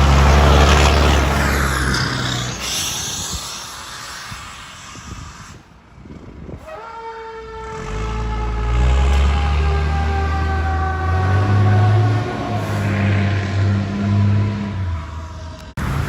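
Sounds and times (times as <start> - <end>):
fire truck air horns: 6.6 - 15.5
high siren tone swooping up: 6.7 - 15.7.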